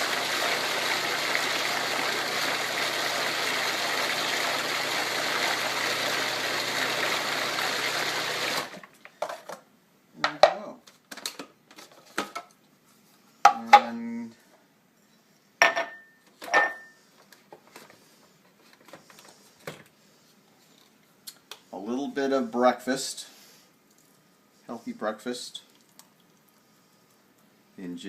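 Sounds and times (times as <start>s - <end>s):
blender running: 0.0s - 8.9s.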